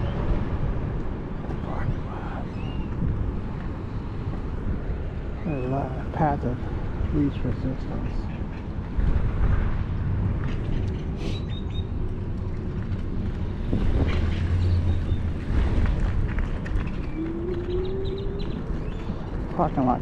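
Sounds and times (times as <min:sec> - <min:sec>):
wind buffeting microphone: 0:00.0 - 0:20.0
bird chirps: 0:02.4 - 0:02.9, 0:16.9 - 0:19.4.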